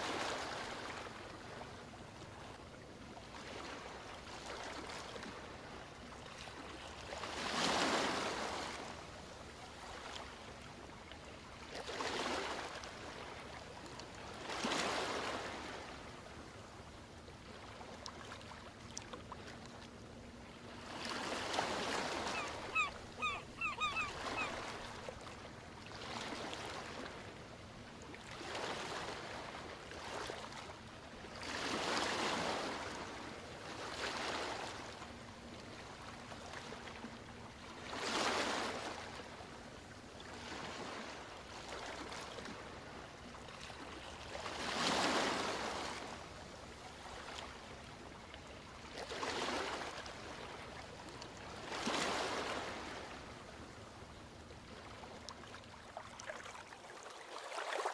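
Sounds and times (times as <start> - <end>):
ocean waves breaking: 20.4 - 27.3, 43.9 - 46.2, 51.6 - 53.4
short bird calls: 22.1 - 24.8.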